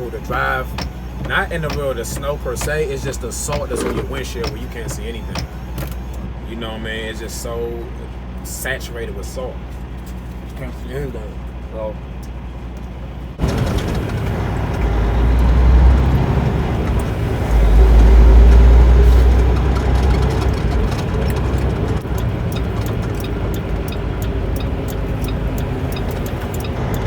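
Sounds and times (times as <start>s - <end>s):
road noise: 0.0s - 27.0s
truck engine drone: 0.0s - 27.0s
deep rumble: 13.3s - 27.0s.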